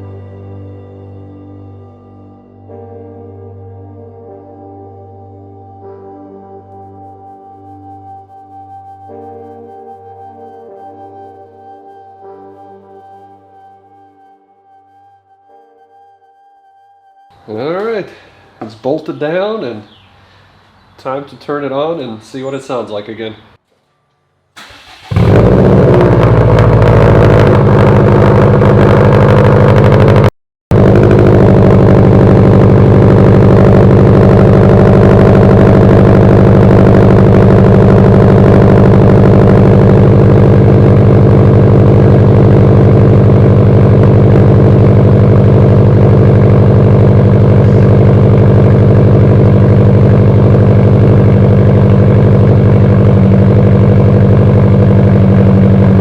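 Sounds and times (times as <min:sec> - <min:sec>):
car engine idling loudly: 0:24.6 - 0:56.0.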